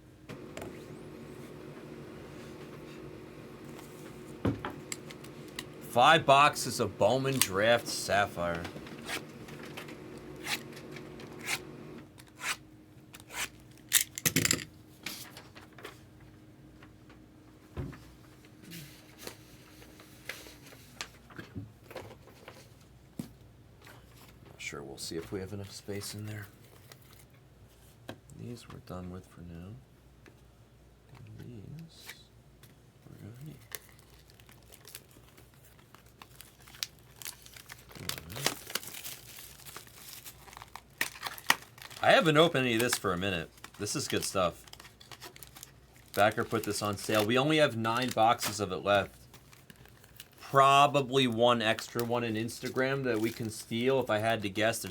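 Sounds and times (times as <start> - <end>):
cellophane crinkling: 33.2 - 54.9.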